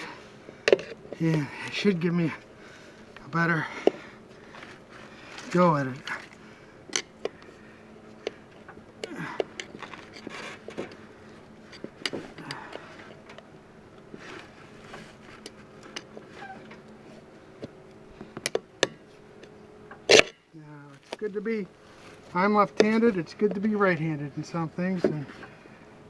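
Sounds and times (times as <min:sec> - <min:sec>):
tire irons clicking and knocking: 0:00.0 - 0:01.9, 0:08.1 - 0:11.0, 0:11.6 - 0:13.5
rubbery tire scrapes: 0:09.8 - 0:10.9, 0:16.2 - 0:16.8.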